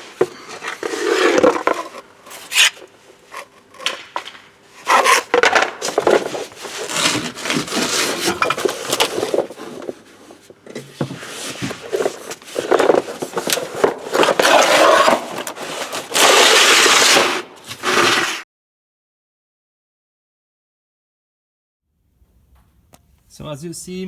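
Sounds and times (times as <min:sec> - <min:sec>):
hard parts scraping and knocking: 0:00.1 - 0:17.3.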